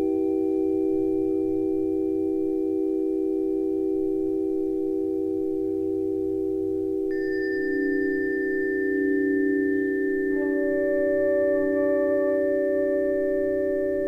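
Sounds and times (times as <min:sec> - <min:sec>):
sustained electronic chord: 0:10.3 - 0:14.0.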